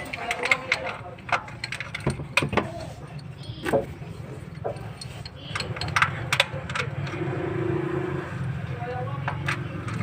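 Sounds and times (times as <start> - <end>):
oil filter wrench clicking: 0.0 - 3.3.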